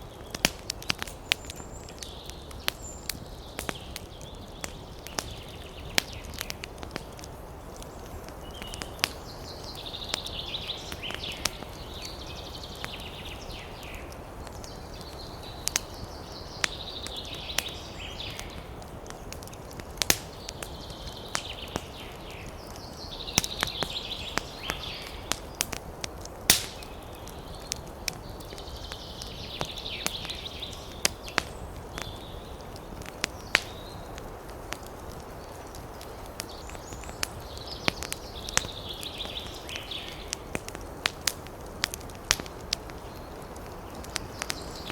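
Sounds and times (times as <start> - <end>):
campfire crackling: 0.0 - 44.9
bird singing: 8.0 - 18.8, 20.2 - 25.6, 26.5 - 34.1, 36.4 - 40.4.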